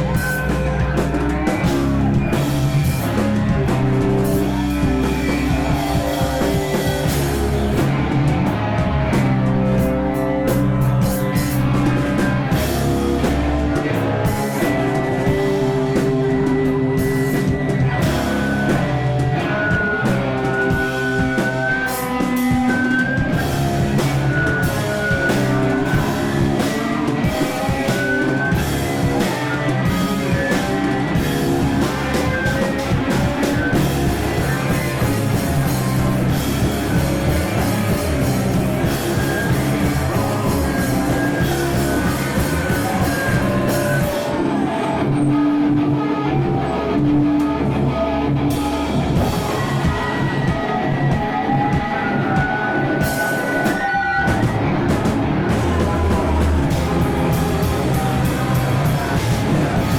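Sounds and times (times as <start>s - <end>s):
high melodic line: 0.0s - 59.9s
rock band playing live: 0.0s - 59.9s.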